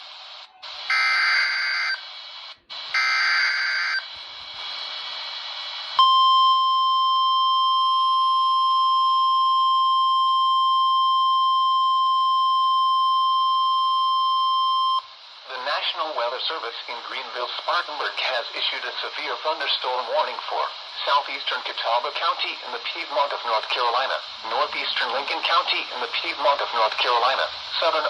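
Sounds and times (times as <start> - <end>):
radio hiss: 0.0 - 6.0, 11.6 - 28.0
steady warning alarm tone: 0.9 - 2.0, 3.0 - 4.0.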